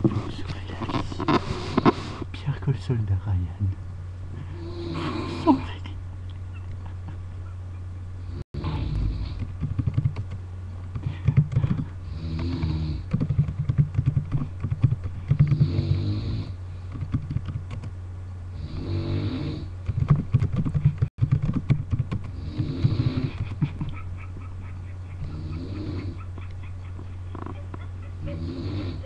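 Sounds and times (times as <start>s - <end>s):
person snoring loudly: 4.5s - 5.6s, 8.3s - 9.4s, 12.0s - 13.1s, 15.4s - 16.6s, 18.5s - 19.7s, 22.3s - 23.4s, 25.3s - 26.2s, 28.2s - 29.0s.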